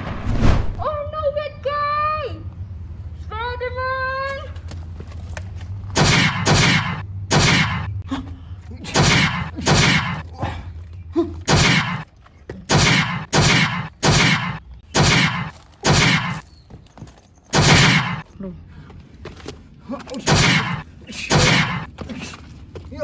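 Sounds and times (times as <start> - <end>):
sharp shot-like impacts: 6.0 - 7.9, 9.0 - 10.2, 11.5 - 12.0, 12.7 - 16.4, 17.5 - 18.2, 20.3 - 21.8.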